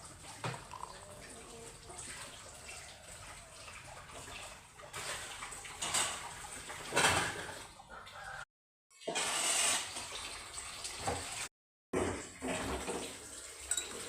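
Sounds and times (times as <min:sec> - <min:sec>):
water running and splashing: 0:00.0 - 0:07.8.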